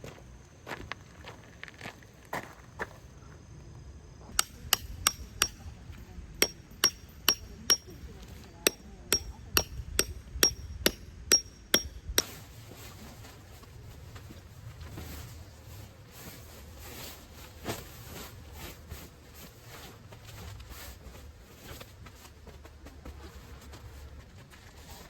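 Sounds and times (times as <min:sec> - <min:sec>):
sharp metallic strikes ringing: 0:06.4 - 0:08.0, 0:08.7 - 0:12.3.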